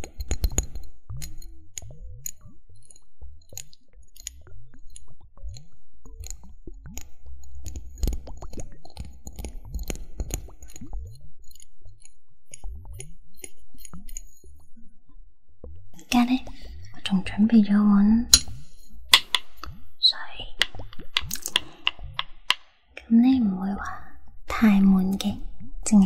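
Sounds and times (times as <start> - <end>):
drinking straws clicking and squeaking: 20.6 - 22.6.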